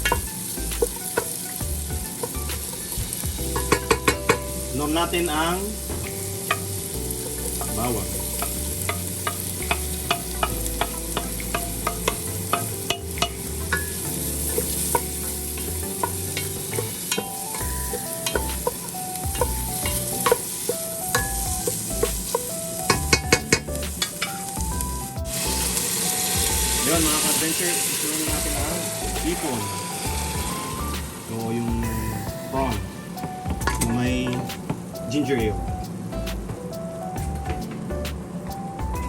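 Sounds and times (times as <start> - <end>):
garlic and onion sizzling in pan: 0.0 - 36.2
utensil scraping a pan: 5.8 - 24.3.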